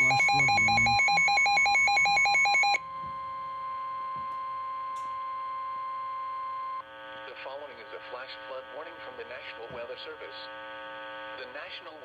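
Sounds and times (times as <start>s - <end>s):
pulsing electronic beeping: 0.0s - 2.8s
steady alert tone: 0.0s - 2.8s.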